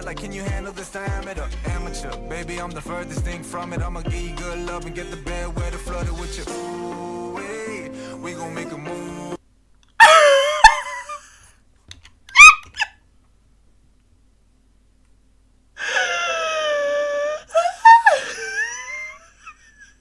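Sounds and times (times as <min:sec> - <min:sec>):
person yelping: 0:10.0 - 0:11.2, 0:12.4 - 0:12.9
person squealing: 0:10.0 - 0:11.3, 0:12.4 - 0:12.9, 0:15.8 - 0:19.0
person wailing: 0:10.0 - 0:11.3, 0:15.8 - 0:18.9.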